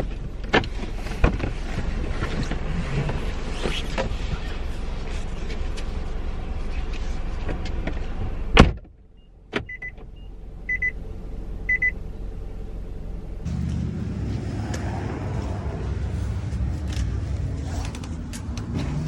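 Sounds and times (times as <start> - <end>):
steady rumbling: 10.5 - 19.0.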